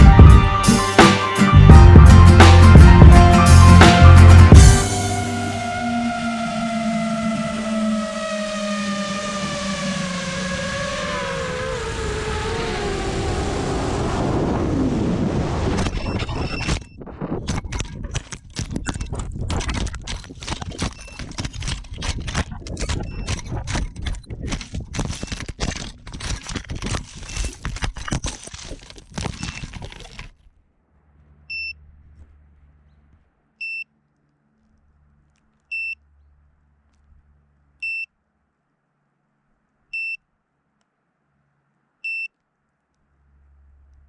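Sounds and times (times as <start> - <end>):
short high beep: 42.0 - 42.3.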